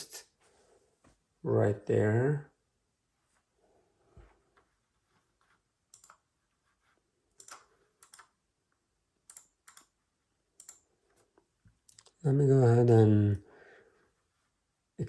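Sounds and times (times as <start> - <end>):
keyboard and mouse clicks: 5.9 - 6.3, 7.3 - 8.4, 9.3 - 10.0, 10.6 - 10.9, 11.8 - 12.2.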